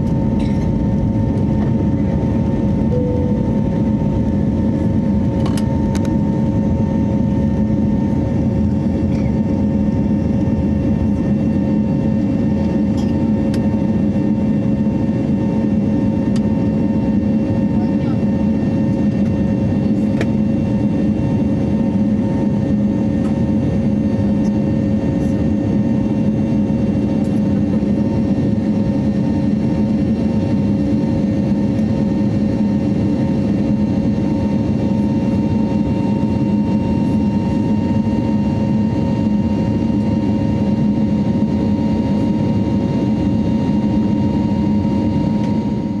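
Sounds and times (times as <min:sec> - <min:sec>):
jet engine drone in cabin: 0:00.0 - 0:46.0
faint steady tones: 0:02.9 - 0:04.3.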